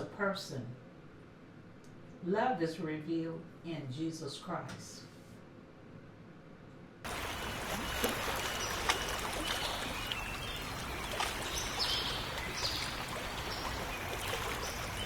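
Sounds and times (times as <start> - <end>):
running water splashing: 7.1 - 15.0.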